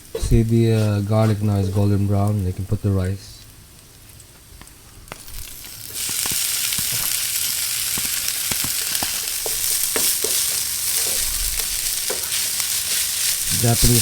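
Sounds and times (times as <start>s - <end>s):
rice sizzling in hot oil: 0.0s - 14.0s
spatula clicking and scraping: 7.9s - 14.0s.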